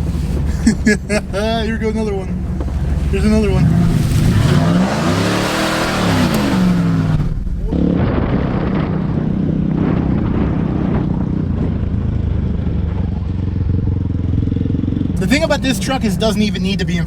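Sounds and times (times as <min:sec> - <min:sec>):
engine running steadily: 0:00.0 - 0:17.0
pickup engine revving: 0:00.0 - 0:17.0.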